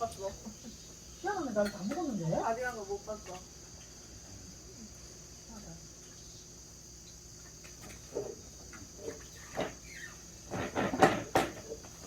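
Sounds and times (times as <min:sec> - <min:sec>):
crickets chirring: 0:00.0 - 0:12.0
knocks and clatters: 0:10.5 - 0:12.0.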